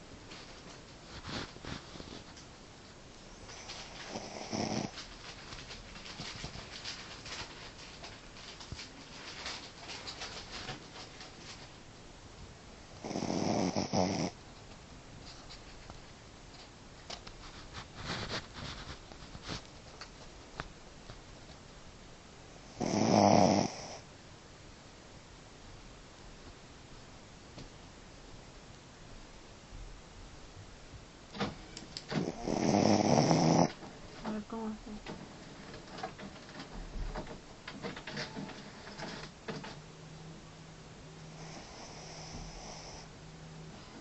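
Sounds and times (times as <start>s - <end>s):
dog snoring: 3.5s - 5.1s, 12.9s - 14.4s, 22.6s - 24.0s, 32.1s - 33.8s, 41.3s - 43.1s.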